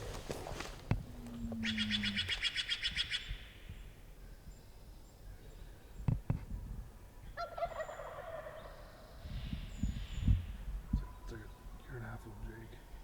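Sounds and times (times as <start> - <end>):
distant turkey gobbling: 1.2 - 3.2, 7.4 - 8.7.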